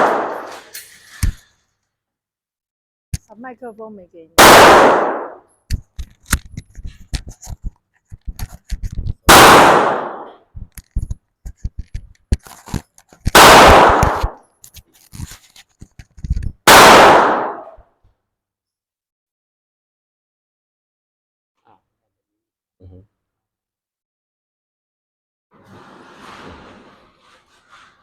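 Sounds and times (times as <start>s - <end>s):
handgun shots: 0.0s - 0.7s, 4.4s - 5.4s, 9.3s - 10.4s, 13.3s - 14.4s, 16.7s - 17.8s.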